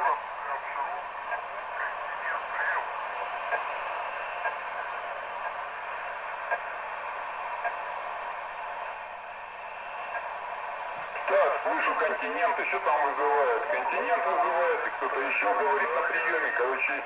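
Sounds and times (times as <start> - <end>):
radio static hiss: 0.0 - 8.0, 11.1 - 17.0
faint garbled radio voices: 0.0 - 8.3, 10.0 - 17.0.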